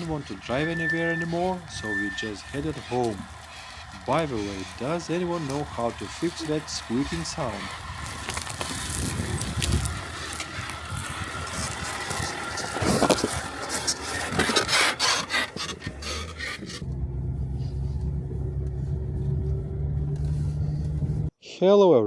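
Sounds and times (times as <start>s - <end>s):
car squeaking and creaking: 0.0s - 21.3s
steady low hum: 16.2s - 21.3s.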